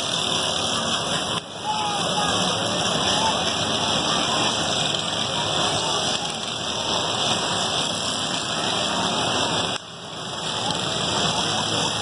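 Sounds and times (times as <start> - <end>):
lawn mower engines running: 0.0 - 12.0.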